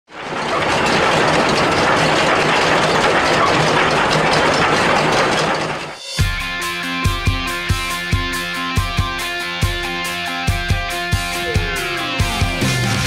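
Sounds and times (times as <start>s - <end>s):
mechanical clatter and rumble: 0.1s - 6.2s
rock music with electric guitar: 6.1s - 13.0s.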